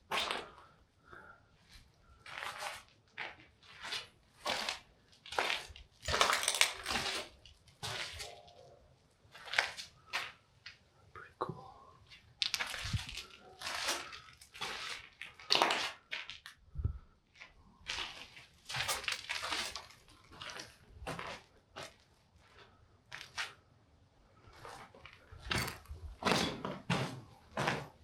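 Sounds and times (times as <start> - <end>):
footsteps crunching over rubble: 2.2 - 8.4, 12.0 - 23.6, 24.4 - 28.0.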